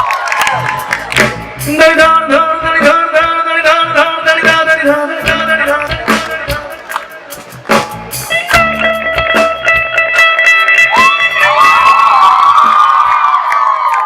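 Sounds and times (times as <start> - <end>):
percussion hits: 5.2 - 14.0
plucked string instrument solo: 8.2 - 11.8.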